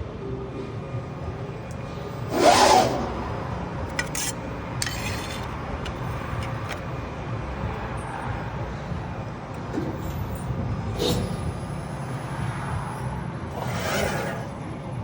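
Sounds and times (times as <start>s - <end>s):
rasping scrape: 3.9s - 5.6s, 13.6s - 14.6s.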